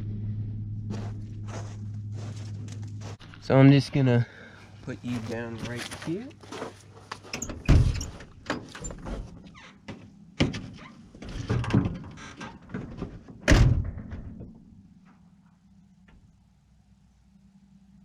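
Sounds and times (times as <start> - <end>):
knocks and clatter: 7.2 - 15.2
truck door slamming: 7.5 - 9.0.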